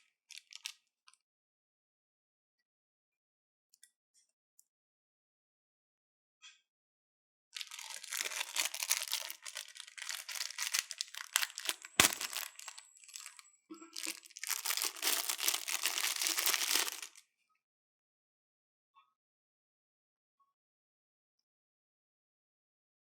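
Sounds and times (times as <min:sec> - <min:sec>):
packaging crinkling and rustling: 0:07.6 - 0:17.2.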